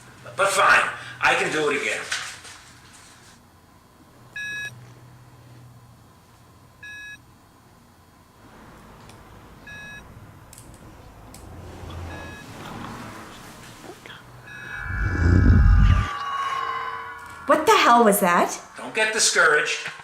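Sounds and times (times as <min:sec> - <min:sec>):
low steady hum: 0:14.4 - 0:19.1
hearing test beeps: 0:14.5 - 0:16.1
low rumble: 0:14.5 - 0:18.8.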